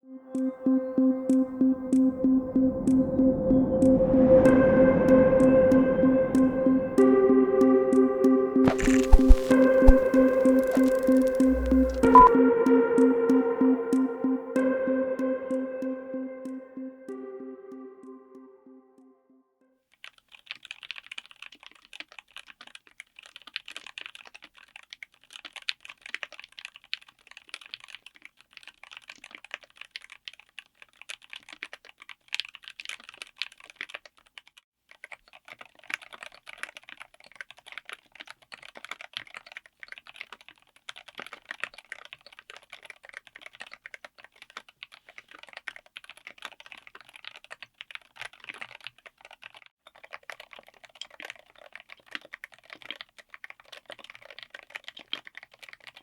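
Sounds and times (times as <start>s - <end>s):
mechanical keyboard typing: 8.6s - 12.3s.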